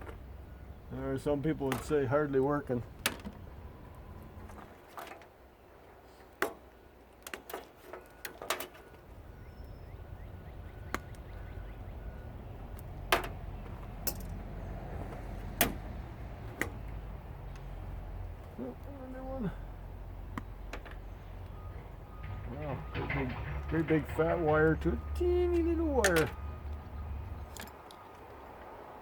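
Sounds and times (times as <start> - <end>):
hand tools clicking and knocking: 1.6 - 2.0, 6.3 - 9.0, 12.8 - 14.4, 22.2 - 26.4.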